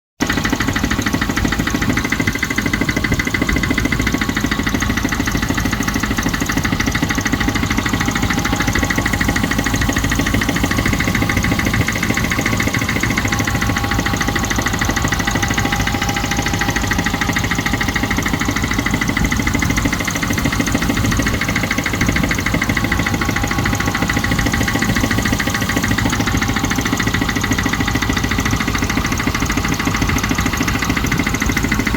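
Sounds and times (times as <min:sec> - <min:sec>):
car engine idling with ticking knock: 0:00.2 - 0:31.9.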